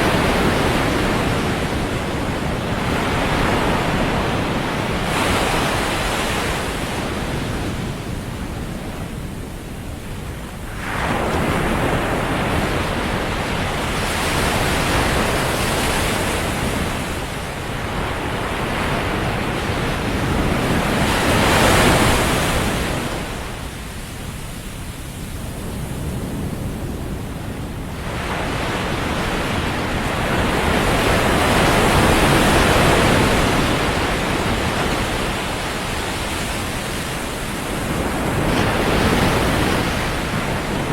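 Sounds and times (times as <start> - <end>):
ocean waves breaking: 0.0 - 40.9.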